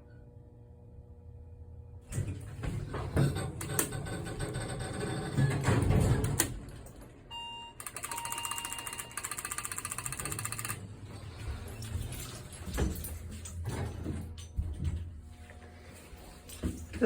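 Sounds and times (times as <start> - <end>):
short electronic beep: 7.3 - 9.4.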